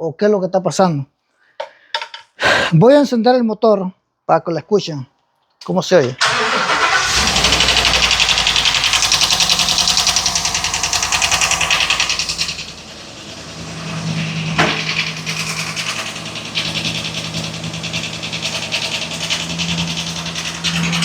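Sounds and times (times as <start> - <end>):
engine idling with top end clatter: 6.2 - 21.0.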